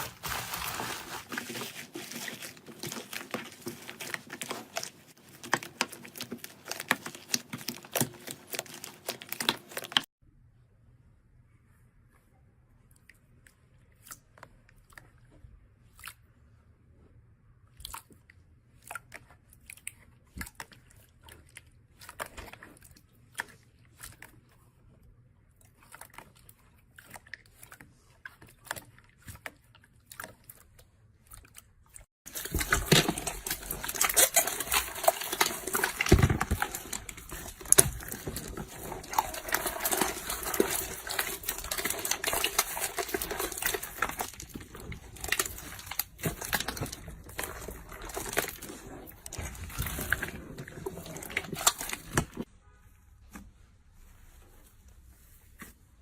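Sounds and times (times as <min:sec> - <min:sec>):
slime sticky crackling: 0:32.4 - 0:52.5.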